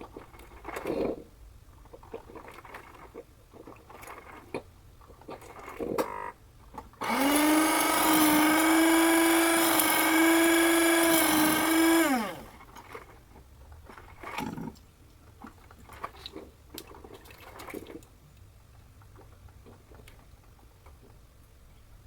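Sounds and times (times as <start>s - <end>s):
coffee maker motor buzzing: 7.0s - 12.6s.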